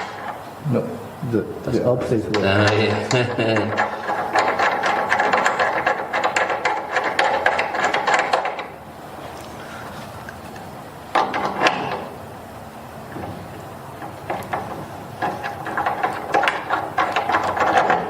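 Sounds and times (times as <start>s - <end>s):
wrench clicking: 2.3s - 8.7s.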